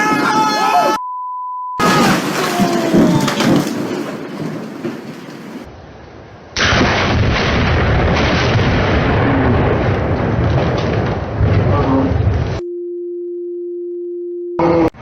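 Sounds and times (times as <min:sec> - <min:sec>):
thunder crack: 0:01.8 - 0:05.8, 0:06.5 - 0:12.6
thunder rumble: 0:01.8 - 0:12.6.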